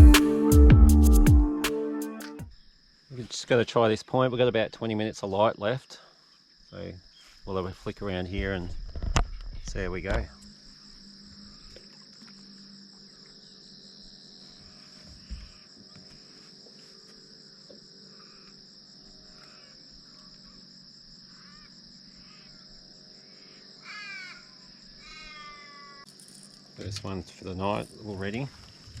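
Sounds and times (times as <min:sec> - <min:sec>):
insects chorus: 0:02.4 - 0:29.0.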